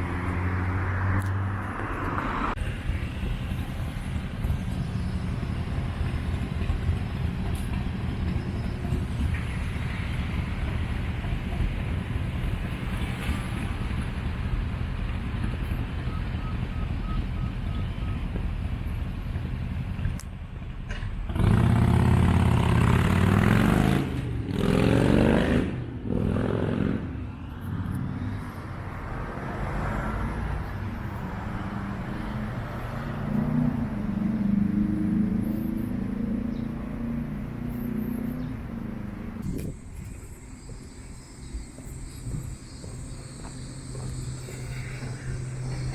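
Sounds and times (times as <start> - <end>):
traffic rumble: 0.0 - 45.9
vehicle passing with whine: 21.3 - 45.9.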